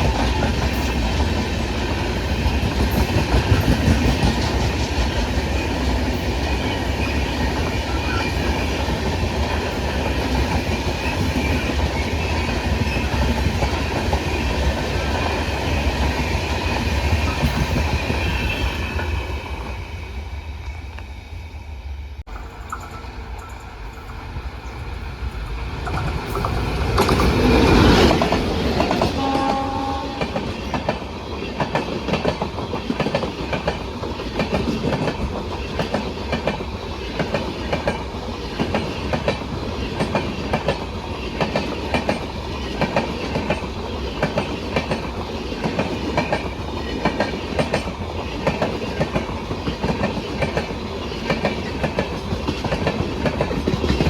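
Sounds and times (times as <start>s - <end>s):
train passing at speed: 0.0s - 54.0s
wheels clacking over rail joints: 25.7s - 54.0s
train horn: 28.9s - 30.5s.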